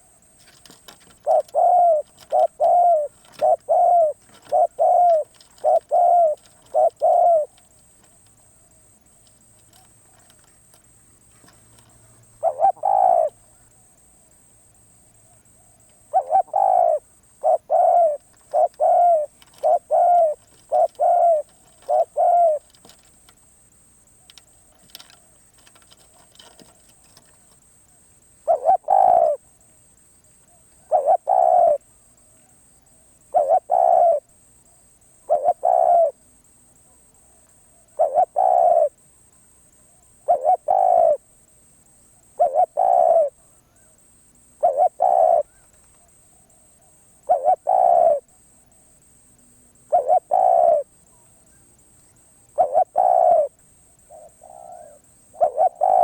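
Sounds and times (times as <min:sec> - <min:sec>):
dove cooing: 0:00.0 - 0:13.9, 0:15.2 - 0:23.4, 0:24.1 - 0:29.6, 0:30.4 - 0:41.3, 0:42.1 - 0:48.4, 0:49.8 - 0:56.0.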